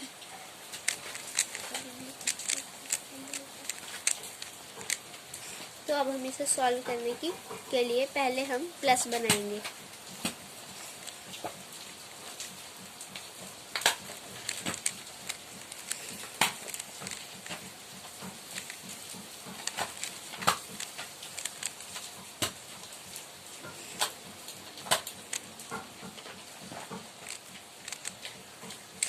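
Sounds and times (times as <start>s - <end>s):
puzzle cube plastic clicking: 0.8s - 5.1s, 13.8s - 17.6s, 18.4s - 22.5s, 27.2s - 28.9s.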